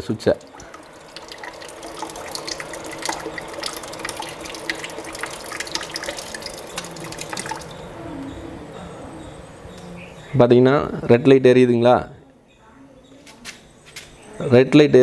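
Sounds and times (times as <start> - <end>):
water running and dripping: 0.0 - 8.4.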